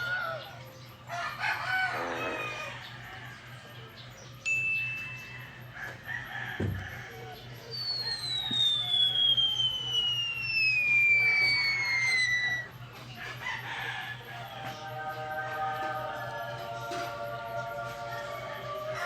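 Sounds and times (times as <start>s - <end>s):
low thud: 6.6s - 7.0s
crowing bird-like call: 6.6s - 12.7s
long falling whistle: 6.6s - 12.7s.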